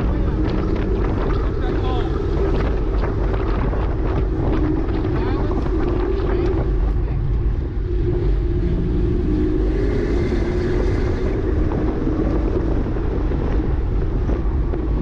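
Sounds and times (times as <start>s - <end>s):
sports car engine running hard: 0.0s - 15.0s.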